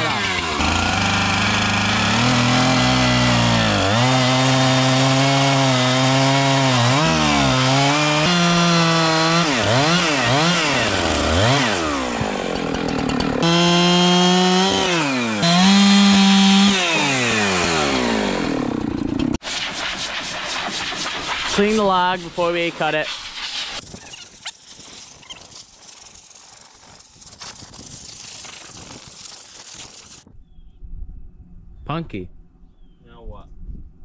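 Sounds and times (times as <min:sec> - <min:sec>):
chainsaw revving: 0:00.0 - 0:19.4.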